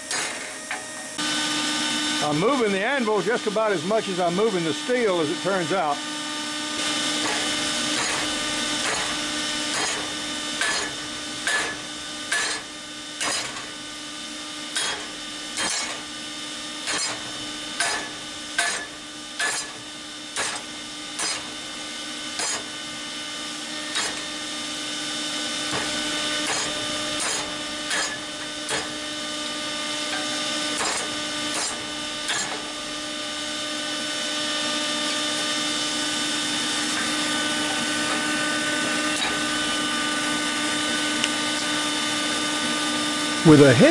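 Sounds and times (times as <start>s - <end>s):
steady hum: 0.0s - 29.4s
hammer striking steel on anvil: 7.2s - 13.7s, 14.8s - 16.0s, 16.9s - 19.8s, 20.4s - 20.6s, 21.2s - 21.5s, 26.5s - 29.0s.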